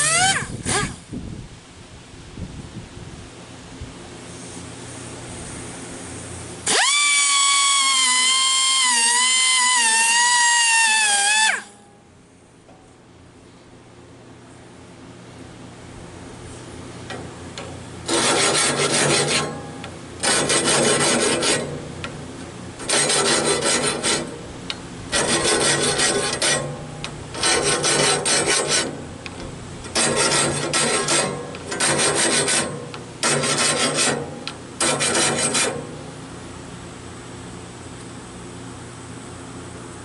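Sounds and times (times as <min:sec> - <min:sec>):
air-powered sharpener grinding: 0:00.0 - 0:01.0, 0:06.6 - 0:11.8, 0:18.0 - 0:21.9, 0:22.8 - 0:24.4, 0:25.1 - 0:35.8.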